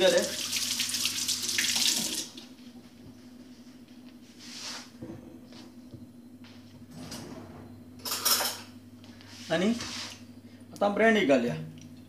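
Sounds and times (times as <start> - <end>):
running kitchen tap: 0.0 - 2.4
steady low hum: 2.2 - 12.0.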